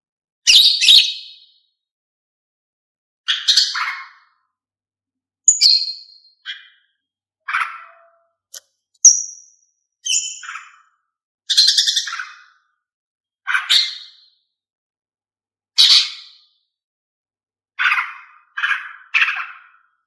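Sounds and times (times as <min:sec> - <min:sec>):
bird chirping calls: 0:05.5 - 0:06.8, 0:09.0 - 0:10.8, 0:11.5 - 0:12.4.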